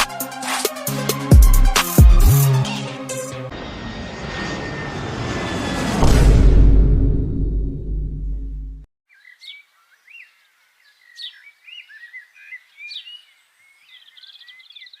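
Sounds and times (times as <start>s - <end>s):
loud low rumble with hum: 3.5s - 8.9s
birdsong whistles and trill: 9.1s - 15.0s.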